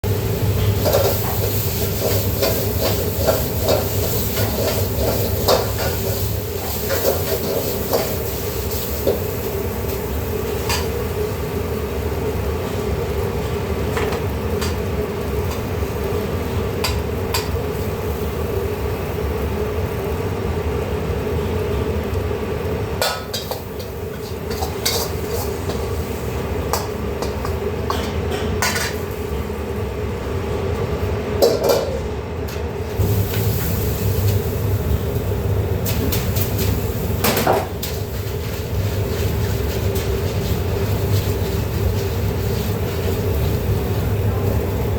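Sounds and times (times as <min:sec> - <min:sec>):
steady background hum: 0:00.0 - 0:44.9
metal utensils clinking on cookware: 0:23.0 - 0:25.8.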